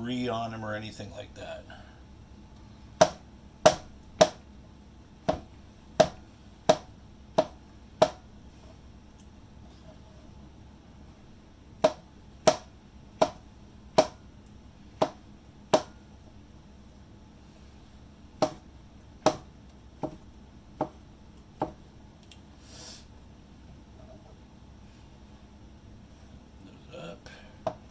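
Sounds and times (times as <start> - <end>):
knife chopping on cutting board: 3.0 - 4.4, 5.3 - 8.2, 11.8 - 13.4, 14.0 - 14.2, 15.0 - 15.9, 18.4 - 18.6, 19.2 - 21.0, 21.6 - 21.8.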